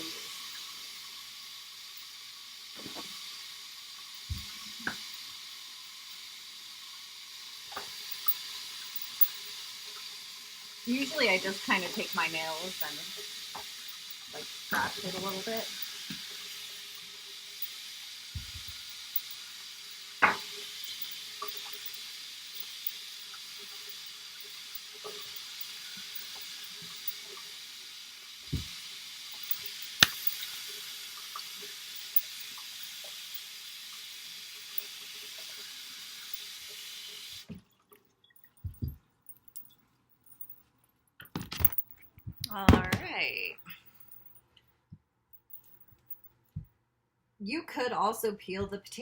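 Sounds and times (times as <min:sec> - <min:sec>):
tap running into sink: 0:04.2 - 0:05.2, 0:18.4 - 0:19.4, 0:20.2 - 0:21.8
thuds: 0:18.4 - 0:18.7.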